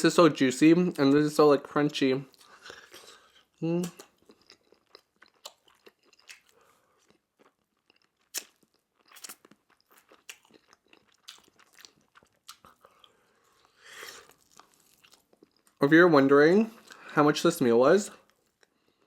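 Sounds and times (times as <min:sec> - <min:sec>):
chewing crunchy fried chicken: 0:02.3 - 0:15.8.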